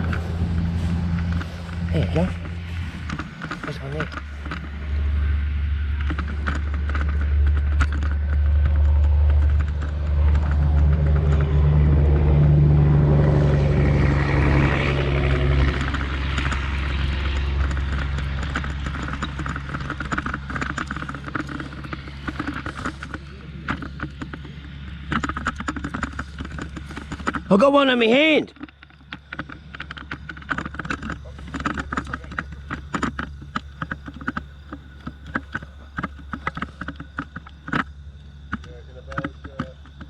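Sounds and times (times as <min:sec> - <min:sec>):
heavy vehicle engine passing: 0:00.0 - 0:28.5.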